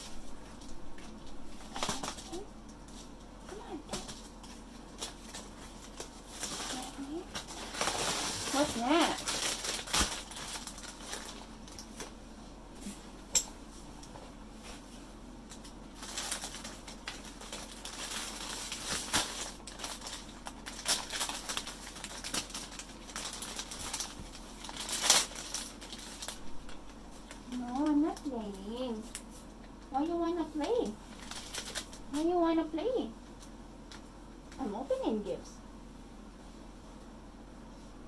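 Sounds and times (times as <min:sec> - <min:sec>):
packaging rustling: 0:00.5 - 0:03.2, 0:03.9 - 0:12.2, 0:15.5 - 0:28.3, 0:31.1 - 0:32.0.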